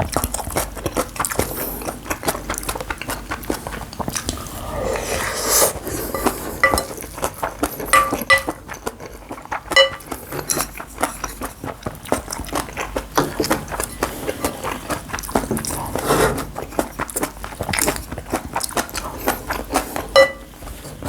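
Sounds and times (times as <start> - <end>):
spoon scraping a bowl: 4.2 - 8.8, 20.1 - 20.5.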